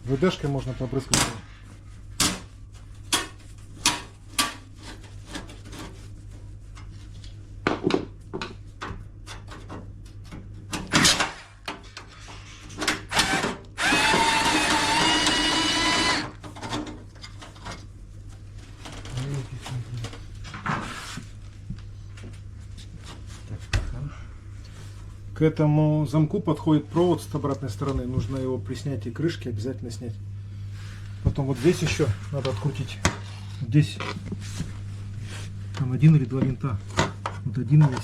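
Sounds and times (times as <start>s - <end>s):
cordless screwdriver whine: 13.1s - 16.3s.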